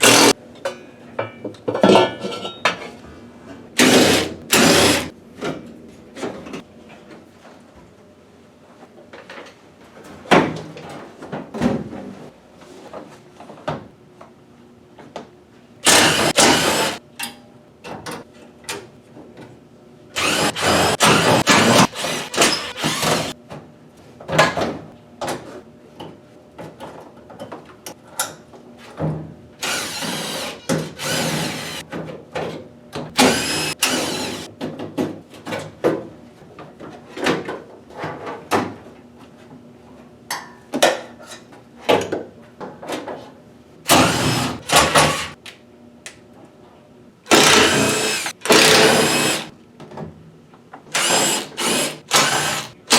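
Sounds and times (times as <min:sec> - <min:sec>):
power driver running: 0:00.0 - 0:00.4, 0:03.8 - 0:05.1, 0:15.8 - 0:17.0, 0:20.2 - 0:23.4, 0:29.6 - 0:31.8, 0:33.2 - 0:34.5, 0:43.9 - 0:45.4, 0:47.3 - 0:49.5, 0:50.9 - 0:52.9.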